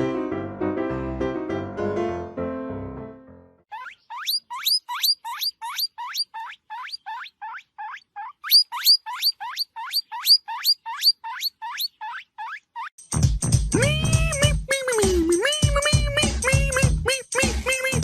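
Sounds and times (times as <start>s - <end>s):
small animal squeaking: 3.7s - 13.0s, 13.8s - 18.0s.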